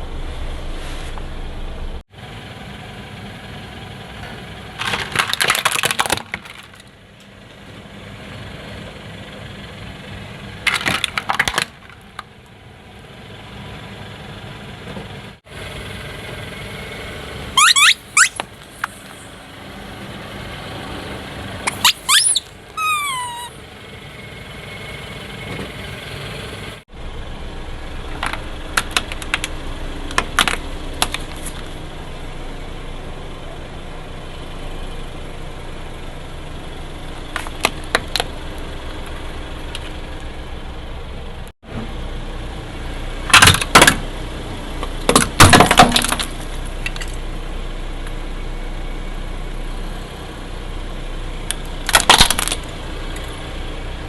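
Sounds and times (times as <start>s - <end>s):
car engine running: 1.3s - 54.0s
short falling squeak: 17.6s - 19.3s, 21.6s - 23.6s.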